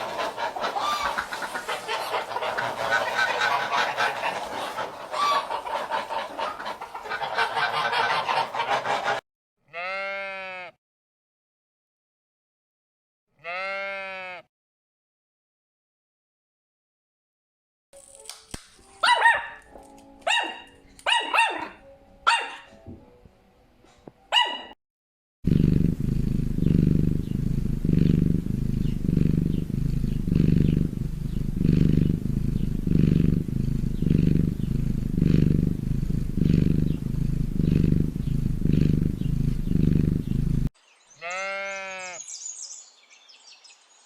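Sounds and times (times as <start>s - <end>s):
dog barking: 19.0s - 22.8s, 24.3s - 24.8s
cat purring: 25.5s - 40.7s.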